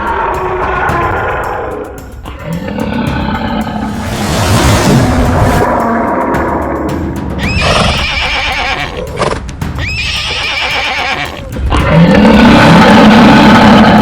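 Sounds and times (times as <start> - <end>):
background music: 0.0 - 14.0
horse whinnying: 7.4 - 11.5.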